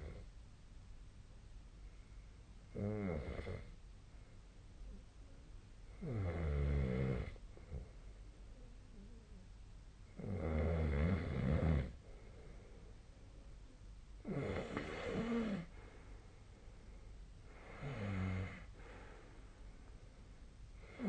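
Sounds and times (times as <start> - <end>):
quiet breathing: 0.0 - 0.4, 1.7 - 10.5, 11.1 - 21.0
person snoring: 2.7 - 3.7, 14.2 - 15.7, 17.6 - 19.0.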